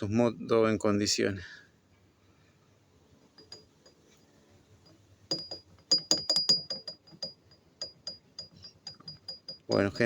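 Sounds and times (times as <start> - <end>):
metallic clinking: 3.2 - 10.0.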